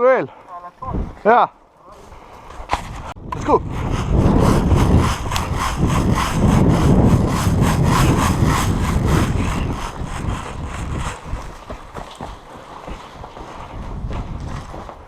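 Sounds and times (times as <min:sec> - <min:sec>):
clothing rubbing on microphone: 0:02.6 - 0:12.0
running footsteps: 0:04.0 - 0:15.0.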